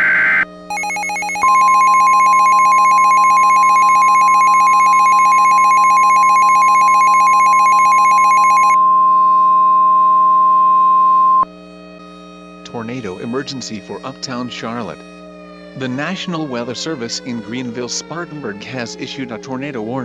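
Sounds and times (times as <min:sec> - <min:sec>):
steady single-pitch alarm tone: 0:00.0 - 0:11.5
rapid pulsing electronic beeping: 0:00.1 - 0:08.8.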